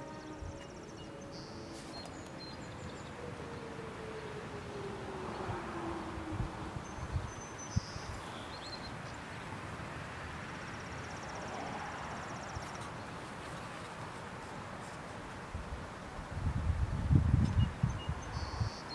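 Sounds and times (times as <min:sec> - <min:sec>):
falling siren tone: 0:00.0 - 0:07.3.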